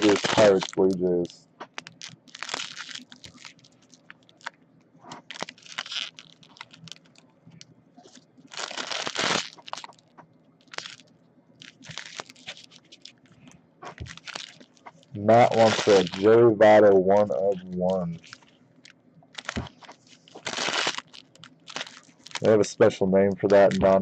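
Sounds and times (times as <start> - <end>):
wrapper ripping: 0.0 - 1.0, 1.7 - 4.5, 5.2 - 7.2, 8.0 - 11.0, 11.6 - 13.2, 13.9 - 22.6
wrappers crinkling: 0.0 - 24.0.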